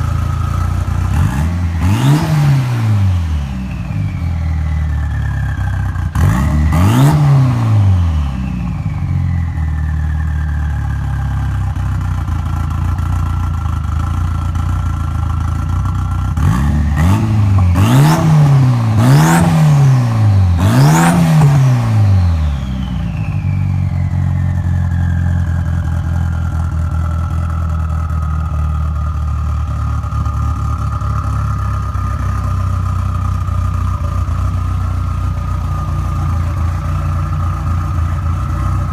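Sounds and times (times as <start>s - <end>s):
car engine idling and revving: 0.0s - 38.9s
high turbo whistle: 3.4s - 11.2s, 19.1s - 25.8s.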